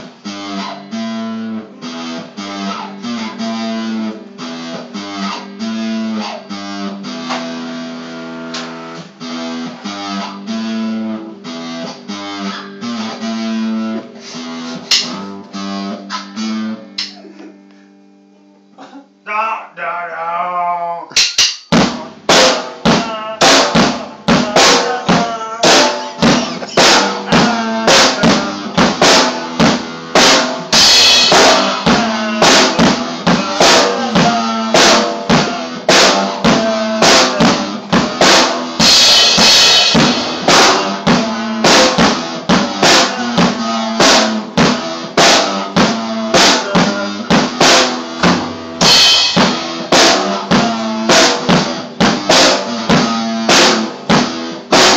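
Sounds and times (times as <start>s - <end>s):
drum kit beat: 0.0s - 17.2s, 21.1s - 54.9s
sustained instrumental notes: 22.8s - 49.8s.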